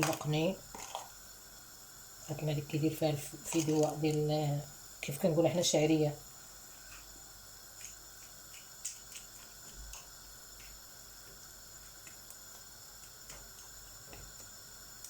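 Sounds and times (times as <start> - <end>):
rice simmering pops and clicks: 0.0 - 1.3, 3.4 - 4.3, 6.8 - 15.0
low steady hiss: 0.0 - 15.0.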